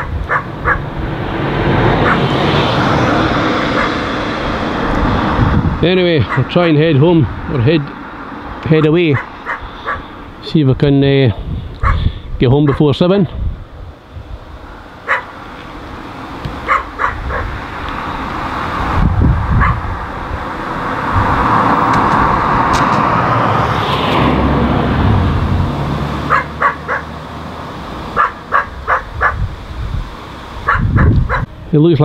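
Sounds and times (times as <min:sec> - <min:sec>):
dog barking: 0:00.0 - 0:00.8, 0:02.0 - 0:02.3, 0:03.7 - 0:04.0, 0:06.2 - 0:06.5, 0:08.8 - 0:10.1, 0:11.8 - 0:12.9, 0:15.0 - 0:15.3, 0:16.6 - 0:17.5, 0:19.6 - 0:19.8, 0:26.3 - 0:27.2, 0:28.2 - 0:29.4, 0:30.6 - 0:31.5
engine running: 0:00.0 - 0:10.5, 0:13.8 - 0:31.7.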